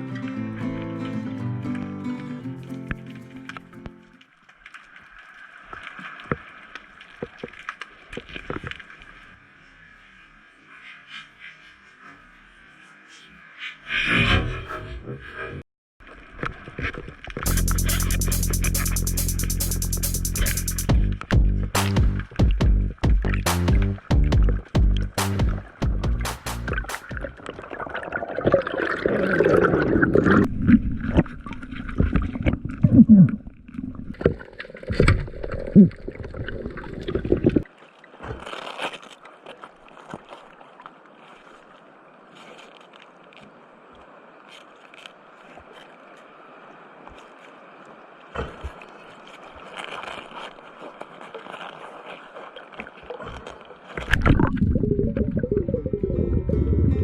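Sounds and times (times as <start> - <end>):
water sloshing and gurgling: 2.7 - 18.2, 21.0 - 57.0
water rushing: 17.4 - 32.9, 52.7 - 57.0
knocks and splashes: 20.9 - 30.5, 34.0 - 39.2, 48.3 - 55.4.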